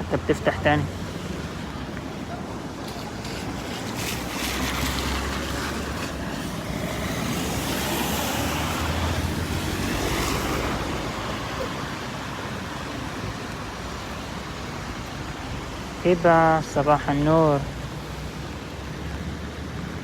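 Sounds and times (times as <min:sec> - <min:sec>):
road traffic on wet street: 0:00.0 - 0:20.0
vehicle passing: 0:03.2 - 0:16.0.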